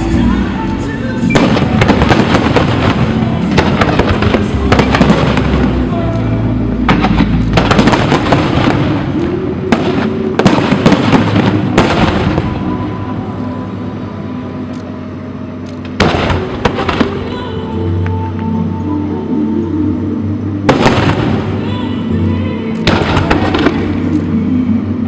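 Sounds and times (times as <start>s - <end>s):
music: 0.0s - 25.0s
fireworks bangs and crackling: 1.2s - 6.2s, 6.8s - 13.0s, 15.8s - 17.5s, 20.6s - 21.7s, 22.8s - 24.3s.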